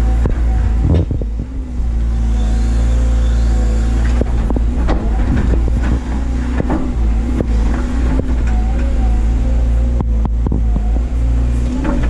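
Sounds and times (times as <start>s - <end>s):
excavator diesel engine running: 0.0s - 12.0s
machine clunks and knocks: 0.2s - 1.5s, 4.0s - 9.0s, 9.9s - 12.0s.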